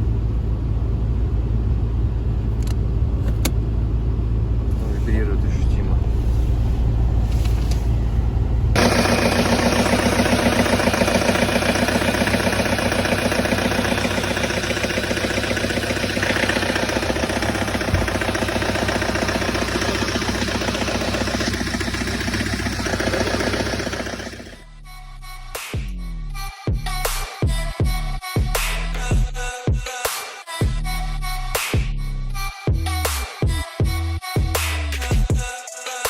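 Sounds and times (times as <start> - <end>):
in-cab vehicle rumble: 0.0 - 25.7, 26.3 - 29.5
diesel engine knocking: 8.6 - 24.6.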